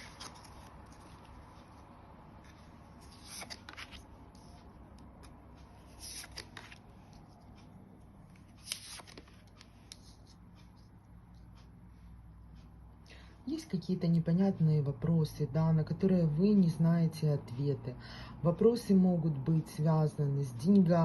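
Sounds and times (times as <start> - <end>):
cards rustling and clicking: 0.0 - 1.8, 2.4 - 11.5.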